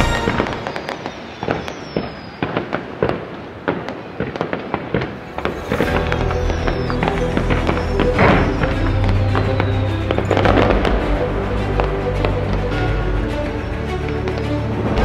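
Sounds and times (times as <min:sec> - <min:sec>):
high falling whistle: 0:00.0 - 0:02.7, 0:05.2 - 0:11.0
fireworks bangs and crackles: 0:00.0 - 0:12.8.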